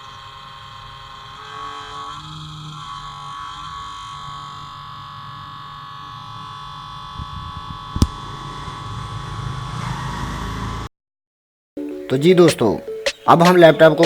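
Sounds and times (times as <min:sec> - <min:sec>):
laptop cooling fan whining: 0:00.0 - 0:10.9.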